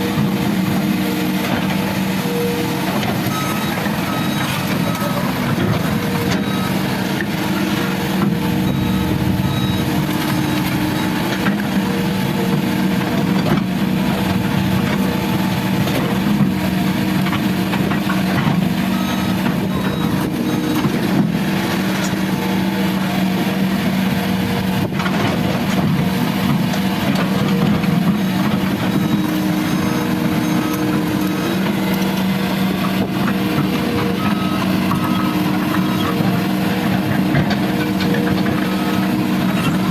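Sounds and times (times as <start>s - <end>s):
diesel excavator engine running: 0.0s - 39.9s
warning beep: 6.0s - 13.1s, 18.9s - 20.9s, 32.4s - 33.0s.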